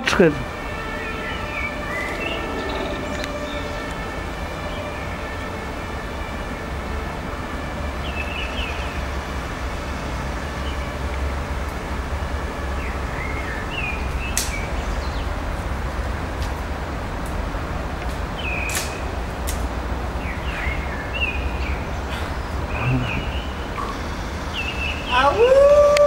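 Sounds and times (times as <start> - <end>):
steady low rumble: 0.0 - 25.1
small birds chirping: 0.5 - 5.0, 20.2 - 25.4.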